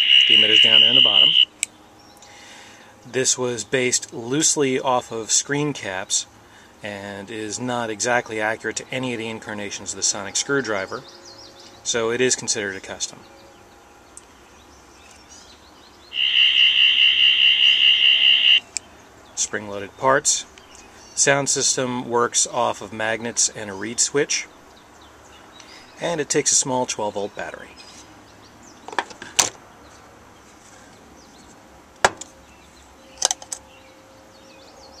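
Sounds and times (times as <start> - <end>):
birds chirping faintly: 0.0 - 35.0
warbling electronic whine: 16.2 - 18.7.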